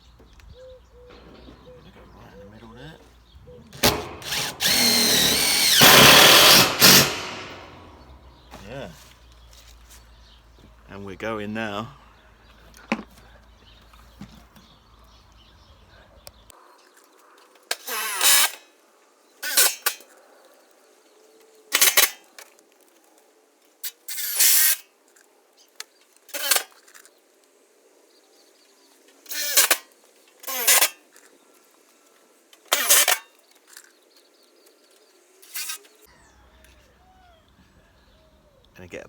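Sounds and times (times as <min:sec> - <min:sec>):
cordless drill whirring: 0:03.8 - 0:07.9.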